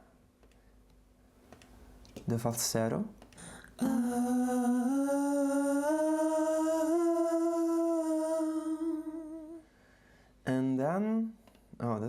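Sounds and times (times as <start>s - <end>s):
man singing falsetto note: 3.8s - 9.6s.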